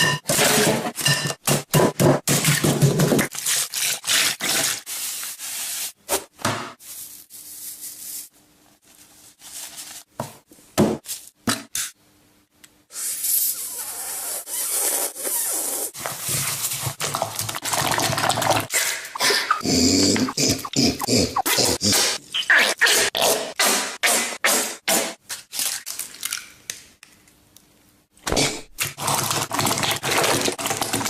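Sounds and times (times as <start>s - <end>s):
kitchen utensils clattering: 0.0s - 3.3s.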